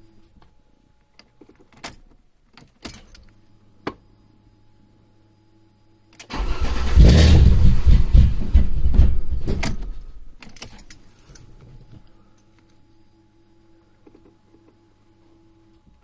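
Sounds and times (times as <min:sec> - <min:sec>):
car engine starting and stalling: 0:06.3 - 0:10.0.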